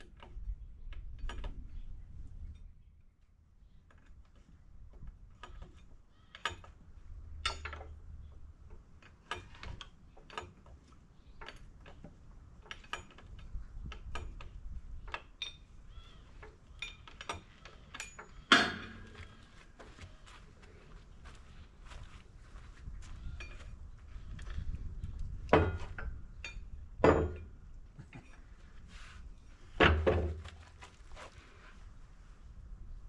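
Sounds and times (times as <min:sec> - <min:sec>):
hand tools clinking on metal: 0:16.8 - 0:19.7
loud metallic clang: 0:18.5 - 0:19.2.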